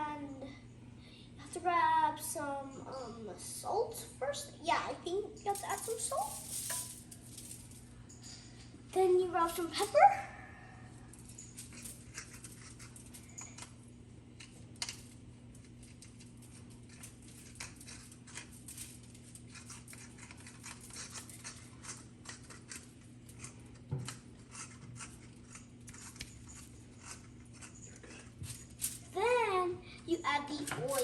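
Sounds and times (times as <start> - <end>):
steady low hum: 0.0 - 31.0
pepper mill grinding: 5.3 - 8.3, 9.0 - 10.2, 11.0 - 29.3.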